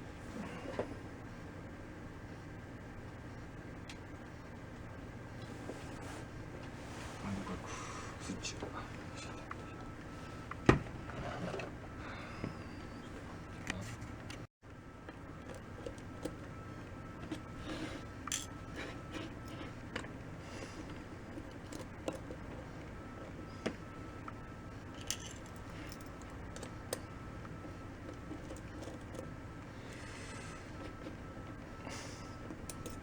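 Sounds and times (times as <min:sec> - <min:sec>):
faint steady hum: 0:00.0 - 0:33.0
small parts clicking and rattling: 0:24.9 - 0:27.0.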